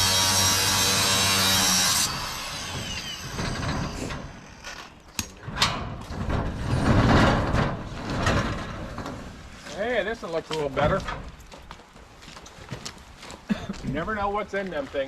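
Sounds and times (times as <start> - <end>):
metal roll-up door rattling: 5.4 - 9.6.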